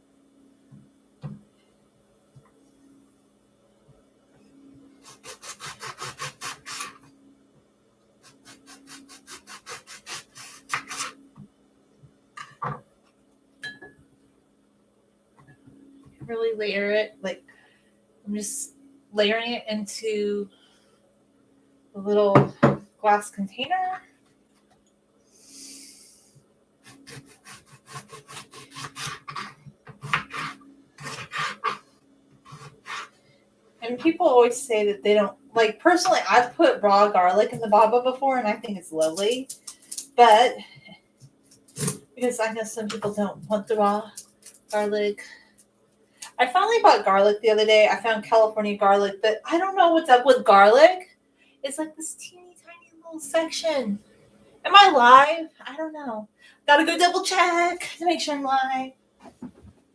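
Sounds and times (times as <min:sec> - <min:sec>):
rapid sawing strokes: 0:05.0 - 0:07.0, 0:08.2 - 0:11.2, 0:26.8 - 0:31.9, 0:32.5 - 0:33.2
brief hiss: 0:25.4 - 0:26.4.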